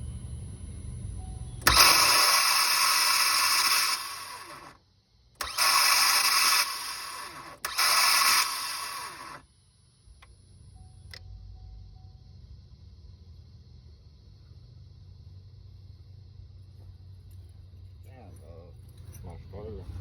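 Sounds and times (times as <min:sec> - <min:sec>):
starter motor whirring: 0:01.6 - 0:04.8, 0:05.4 - 0:09.4.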